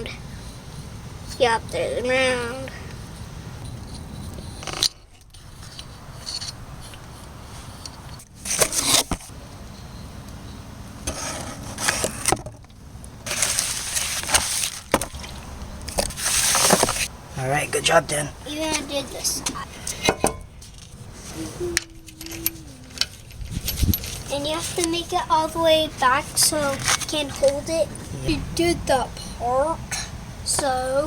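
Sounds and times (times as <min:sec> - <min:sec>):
scraping on metal: 0:11.0 - 0:12.4.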